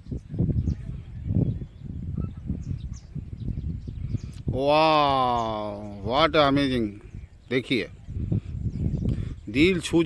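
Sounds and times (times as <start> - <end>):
faint bird chirps: 0.0 - 6.3
low rumble on microphone: 0.0 - 10.0.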